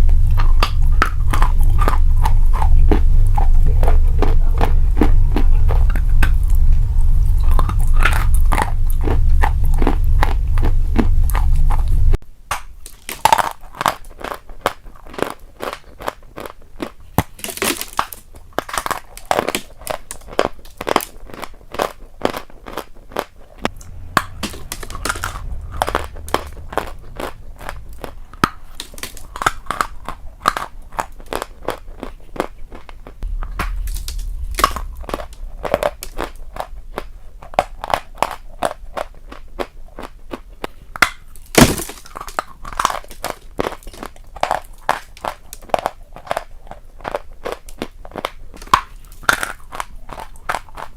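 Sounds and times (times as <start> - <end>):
person chewing crunchy food: 0.0 - 12.2.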